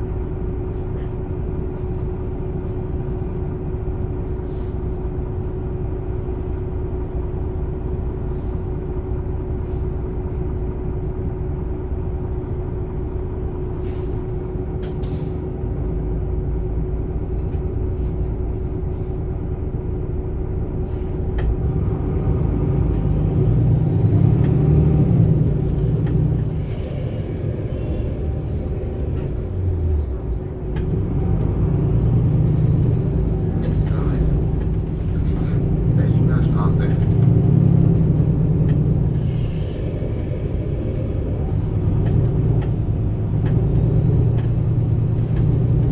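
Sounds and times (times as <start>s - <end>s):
bus engine rumble: 0.0s - 45.9s
transmission whine: 21.4s - 45.9s.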